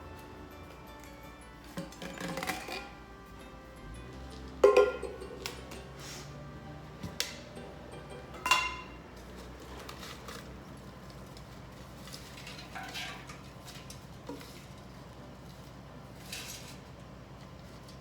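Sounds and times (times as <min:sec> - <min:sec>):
cooking gear taps and clinks: 0:01.8 - 0:03.0.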